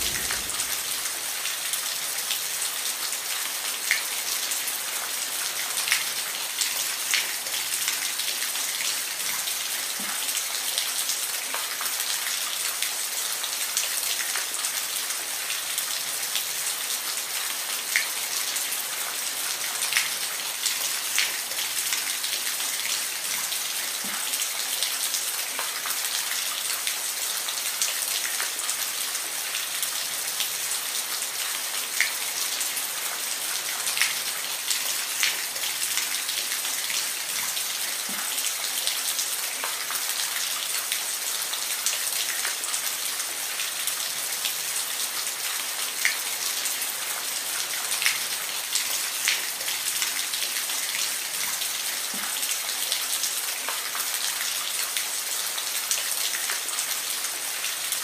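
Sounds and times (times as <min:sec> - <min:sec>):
rain drops ticking: 0:00.0 - 0:01.6
steady rain hiss: 0:00.0 - 0:58.0.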